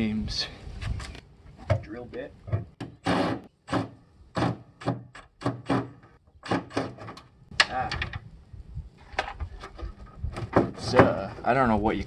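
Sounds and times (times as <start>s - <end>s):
hand tools knocking and scraping: 9.1s - 11.5s.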